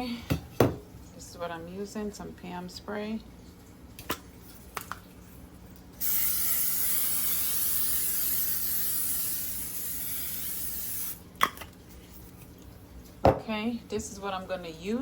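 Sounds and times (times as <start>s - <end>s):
aerosol cooking spray hissing: 6.0s - 11.2s.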